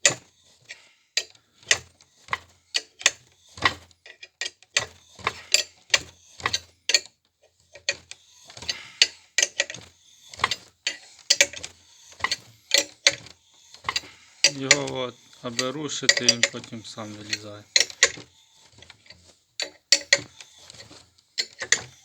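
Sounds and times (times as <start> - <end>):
metal scraping: 9.6 - 22.0
wrench metallic clicks: 10.4 - 13.2, 13.9 - 18.2, 19.6 - 20.8, 21.4 - 21.9.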